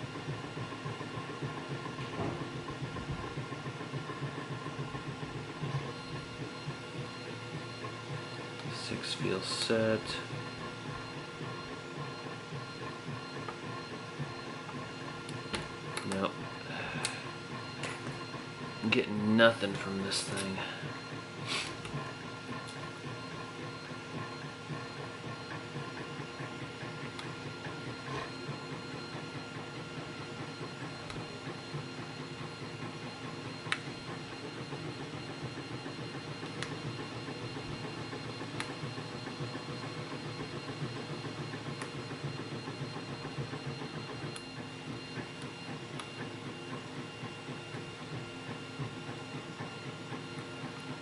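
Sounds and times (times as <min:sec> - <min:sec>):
mechanical hum: 0:00.0 - 0:51.0.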